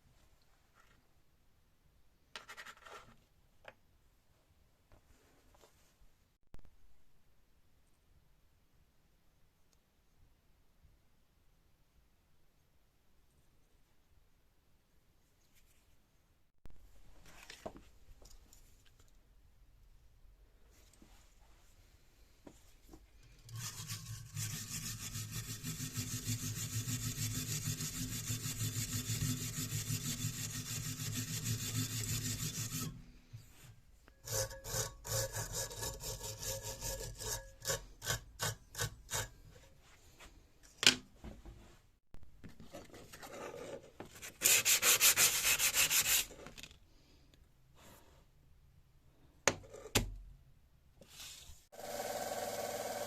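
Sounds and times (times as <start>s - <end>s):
abrasive rubbing on chisel: 23.4s - 33.0s.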